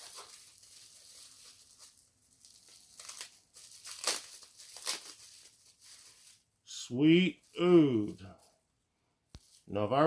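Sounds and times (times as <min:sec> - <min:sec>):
packaging crinkling and rustling: 0:00.0 - 0:06.5.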